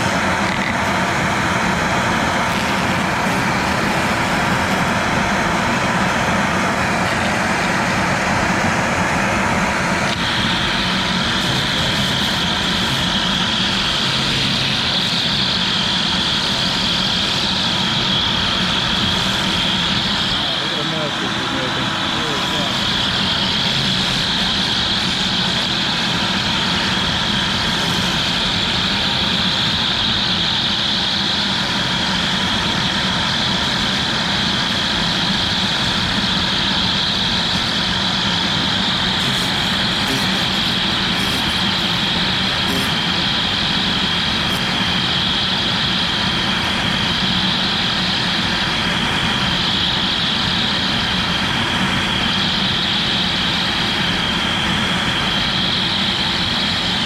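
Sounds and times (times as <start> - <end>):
router spindle high whine: 0.0 - 57.0
router bit cutting plastic: 0.1 - 1.0, 2.4 - 5.0, 10.1 - 17.1, 17.7 - 29.8, 37.4 - 45.2.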